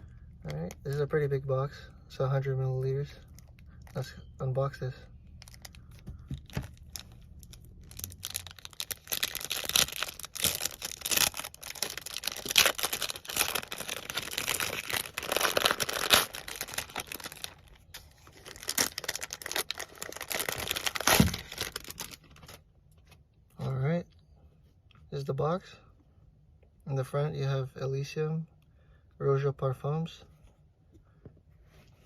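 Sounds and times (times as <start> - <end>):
packaging crinkling and tearing: 5.4 - 22.6.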